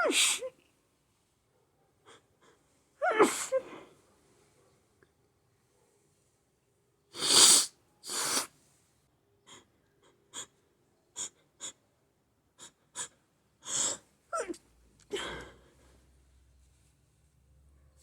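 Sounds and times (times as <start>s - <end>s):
person sneezing: 0.0s - 0.6s, 7.2s - 8.5s
short sharp sniffs: 7.2s - 8.6s.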